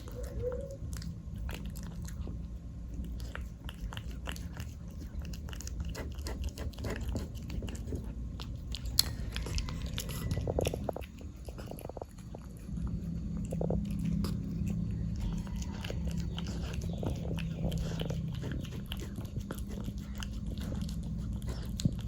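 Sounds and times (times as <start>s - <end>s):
cat chewing wet food: 0.0s - 22.0s
steady low hum: 0.0s - 22.0s.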